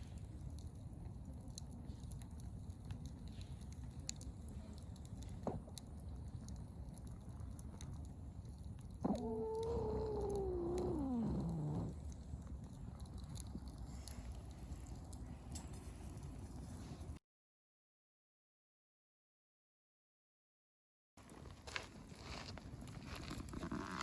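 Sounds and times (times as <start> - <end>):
campfire crackling: 0.0 - 17.2, 21.2 - 24.0
drawn-out cry sliding down: 9.0 - 11.9.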